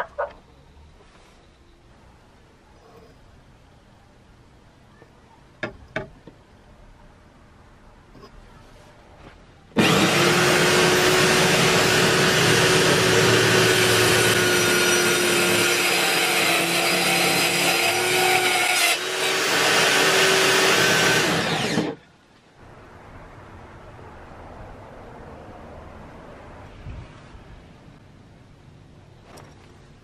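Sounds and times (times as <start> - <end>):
electric power tool running: 9.8 - 22.0.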